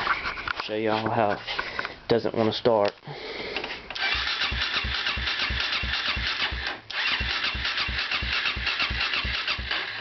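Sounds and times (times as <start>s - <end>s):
electric starter cranking engine: 4.0s - 10.0s.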